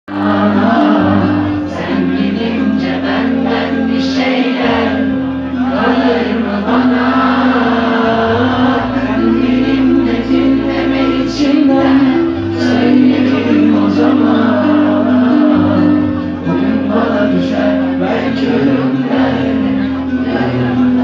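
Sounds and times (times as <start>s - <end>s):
person singing: 0.0s - 21.0s
bass notes and chords: 0.1s - 21.0s.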